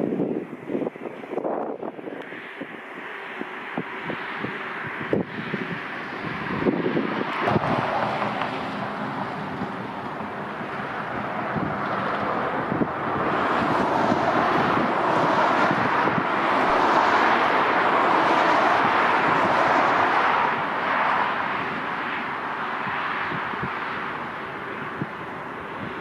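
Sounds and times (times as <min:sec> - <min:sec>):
jet airliner engine roar: 0:00.0 - 0:26.0.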